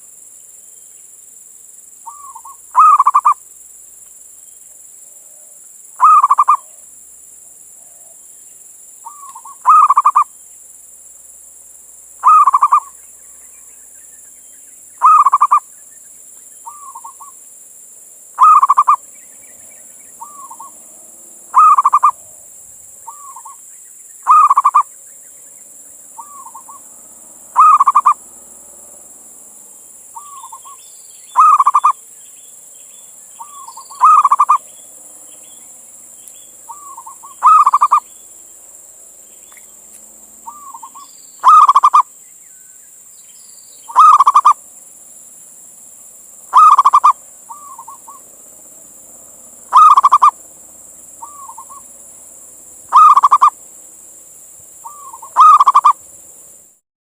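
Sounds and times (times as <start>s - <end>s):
dove cooing: 2.1s - 3.4s, 5.2s - 6.8s, 9.0s - 10.3s, 12.2s - 13.0s, 15.0s - 15.7s, 16.6s - 17.3s, 18.4s - 22.4s, 23.0s - 23.6s, 24.2s - 24.9s, 26.2s - 28.6s, 30.2s - 30.8s, 31.4s - 32.0s, 33.4s - 34.7s, 36.6s - 38.1s, 40.4s - 42.1s, 43.9s - 44.6s, 46.5s - 48.6s, 49.2s - 50.4s, 51.1s - 52.0s, 52.9s - 53.6s, 54.8s - 56.0s.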